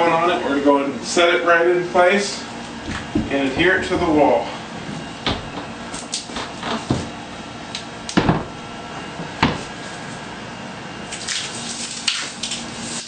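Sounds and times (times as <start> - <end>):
wall panel knocking and bumping: 2.8 - 4.4, 5.2 - 5.7, 6.3 - 7.1, 8.2 - 8.6, 9.2 - 9.7.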